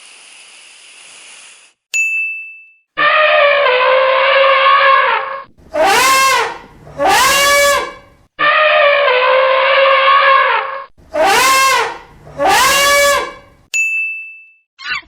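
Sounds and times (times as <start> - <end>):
animal horn-like cries: 3.0 - 13.6.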